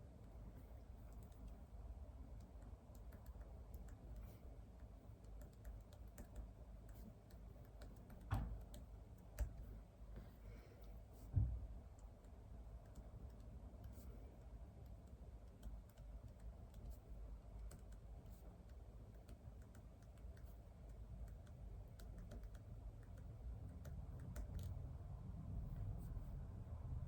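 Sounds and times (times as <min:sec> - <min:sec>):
low thump: 0:11.3 - 0:11.7.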